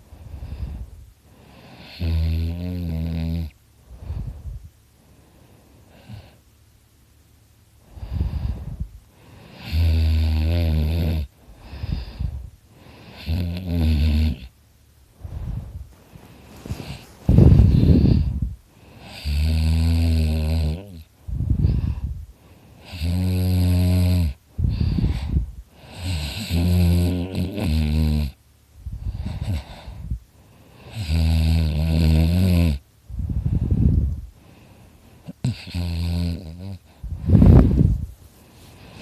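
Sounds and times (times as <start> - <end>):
man snoring loudly: 1.6 - 3.5, 9.4 - 12.2, 13.0 - 14.5, 19.0 - 21.1, 22.8 - 24.4, 25.8 - 28.4, 30.9 - 32.8, 35.3 - 36.9
loud rushing breath: 15.2 - 18.6, 37.0 - 39.0.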